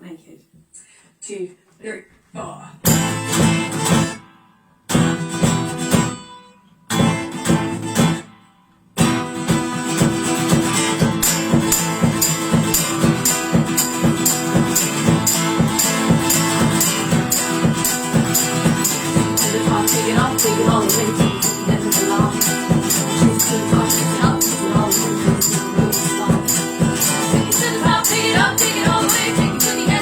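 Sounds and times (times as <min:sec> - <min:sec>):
acoustic guitar strumming: 0:02.8 - 0:30.0
tambourine hits: 0:11.2 - 0:30.0.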